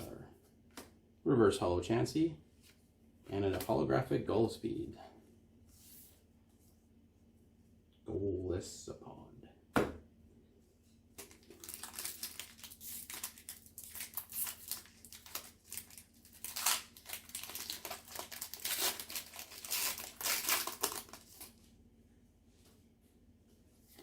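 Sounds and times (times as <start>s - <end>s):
foil wrapper crinkling and tearing: 11.2s - 21.6s.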